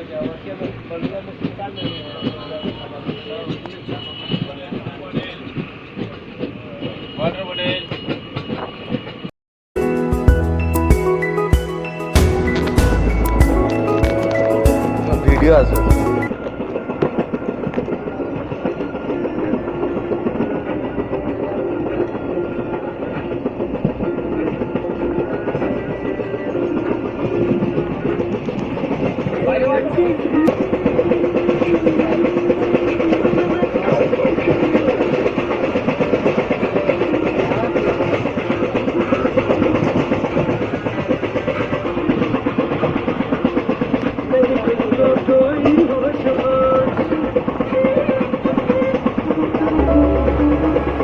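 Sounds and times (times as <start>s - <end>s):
train rumbling on rails: 0.0s - 9.3s, 11.7s - 51.0s
wheels knocking on track: 0.0s - 9.3s, 12.6s - 50.2s
hum: 49.8s - 51.0s.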